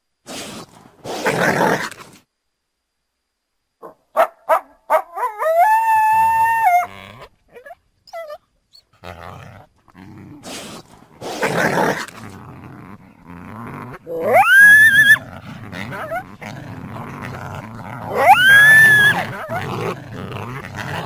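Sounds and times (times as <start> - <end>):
coyote howl: 4.9 - 8.4, 14.0 - 20.0
harsh raspy coyote calls: 14.0 - 16.4, 18.1 - 19.6
coyote yips: 14.2 - 15.2, 18.1 - 19.2.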